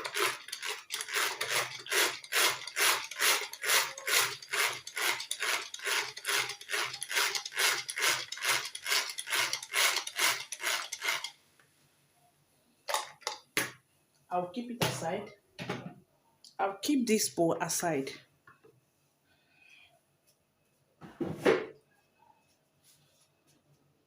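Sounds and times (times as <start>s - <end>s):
stick blender pulsing: 0.0s - 11.4s.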